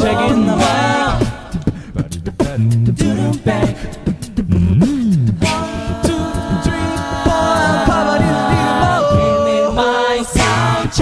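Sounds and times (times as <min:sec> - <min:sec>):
beatboxed percussion: 0:00.0 - 0:11.0
vocal group singing chords: 0:00.0 - 0:11.0.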